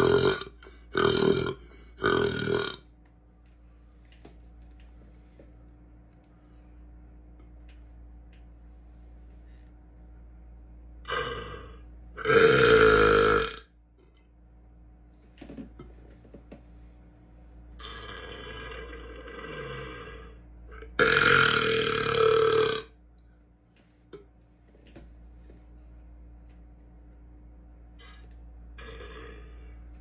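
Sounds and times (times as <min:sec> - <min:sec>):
man burping: 0:00.0 - 0:02.9, 0:11.0 - 0:13.7, 0:17.8 - 0:23.0, 0:28.8 - 0:29.7.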